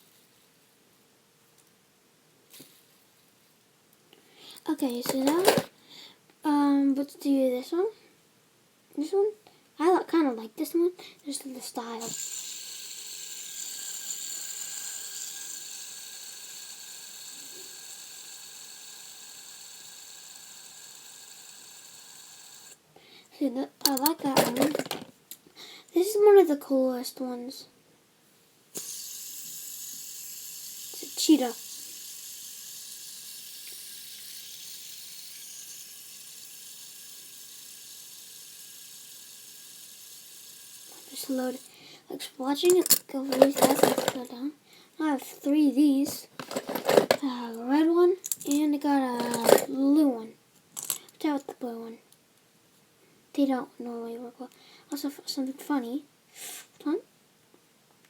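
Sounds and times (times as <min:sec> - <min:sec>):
fidget spinner whirring: 0:04.9 - 0:05.7, 0:11.2 - 0:22.8, 0:23.8 - 0:25.1, 0:28.8 - 0:41.7, 0:42.5 - 0:44.3, 0:45.9 - 0:47.6, 0:48.2 - 0:49.8.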